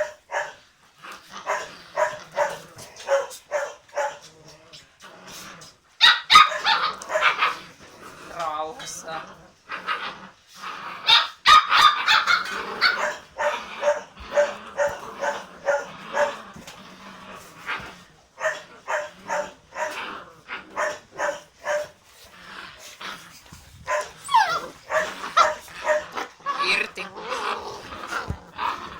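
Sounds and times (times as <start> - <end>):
puppies yapping: 6.0 - 7.7, 11.0 - 28.9
puppy sliding whine: 12.2 - 28.9.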